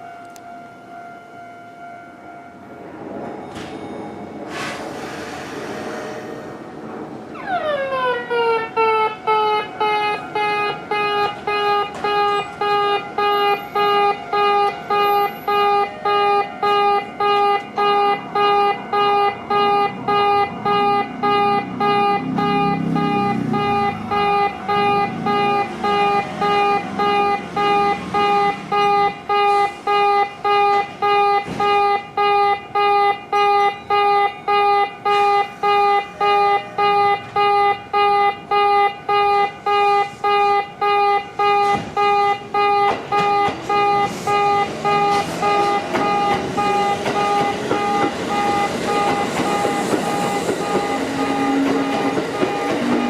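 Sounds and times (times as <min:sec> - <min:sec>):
level crossing alarm beeping: 0:00.0 - 0:04.5, 0:07.4 - 0:53.0.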